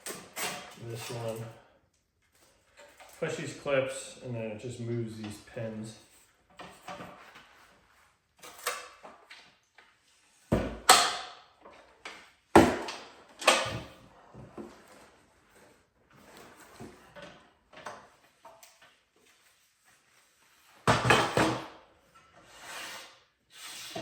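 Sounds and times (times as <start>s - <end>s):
saw stand parts clunking and rattling: 0.0s - 1.6s, 12.6s - 14.0s.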